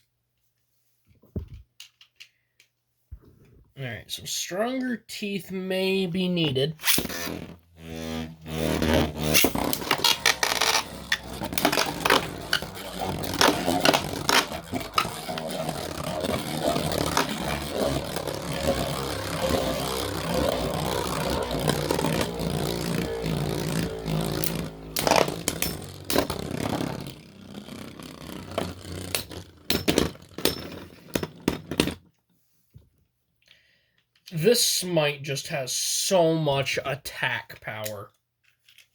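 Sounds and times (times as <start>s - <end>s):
spinning tops scraping whirr: 6.8s - 31.5s
spinning tops clicking: 8.0s - 30.8s.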